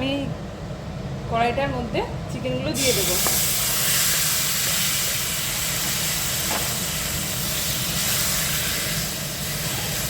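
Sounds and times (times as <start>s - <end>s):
chicken sizzling in a pan: 2.8s - 10.0s.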